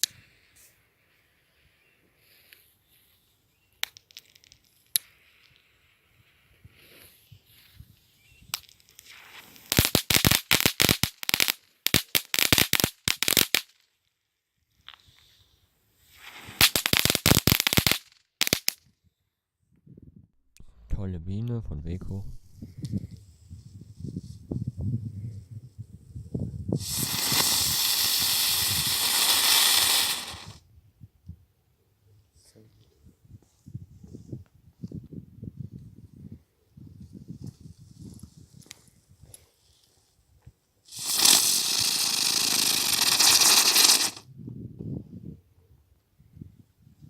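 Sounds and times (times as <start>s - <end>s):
firecrackers crackling: 8.4s - 13.8s, 16.1s - 18.8s, 26.8s - 30.6s, 40.9s - 44.2s.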